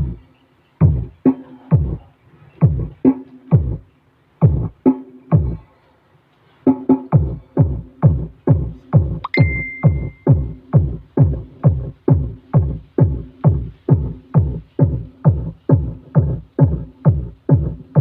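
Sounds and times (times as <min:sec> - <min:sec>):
deep kick drums: 0:00.8 - 0:01.1, 0:02.6 - 0:03.8, 0:04.4 - 0:05.6, 0:07.1 - 0:18.0
electronic dance music: 0:06.7 - 0:18.0
short high synth tone: 0:09.3 - 0:10.3.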